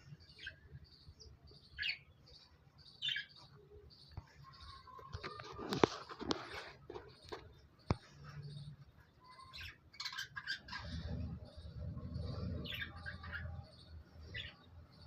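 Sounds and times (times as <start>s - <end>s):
budgerigars chirping: 0.3s - 5.4s, 7.2s - 15.0s
low rumble: 10.7s - 14.1s.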